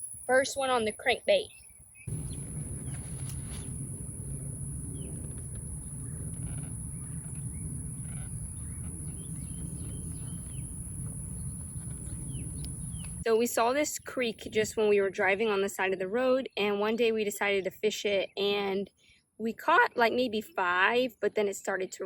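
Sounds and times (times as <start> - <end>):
bird chirps: 1.5 - 13.2
low rumble: 2.1 - 13.2.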